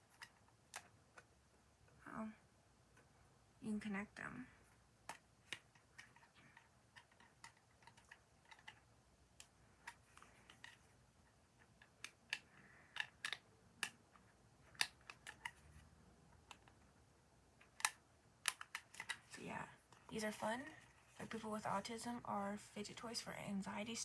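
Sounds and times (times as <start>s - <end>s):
plastic tubes clicking: 0.0s - 1.3s, 5.0s - 16.9s, 17.6s - 20.9s.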